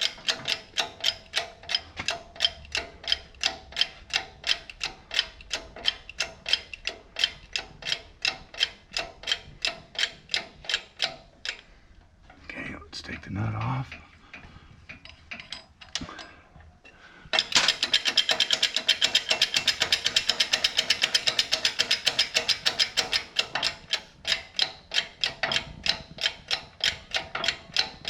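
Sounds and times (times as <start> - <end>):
socket ratchet clicking: 0.0 - 11.6, 17.4 - 28.0.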